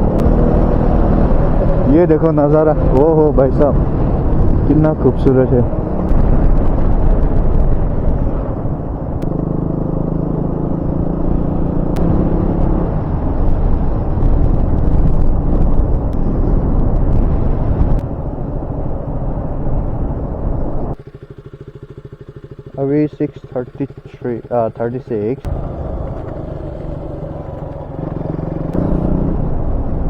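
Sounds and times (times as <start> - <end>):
fast even pulsing: 0.0 - 9.4
wind rumble on microphone: 0.0 - 21.0, 25.4 - 30.0
motorcycle engine running: 0.0 - 30.0.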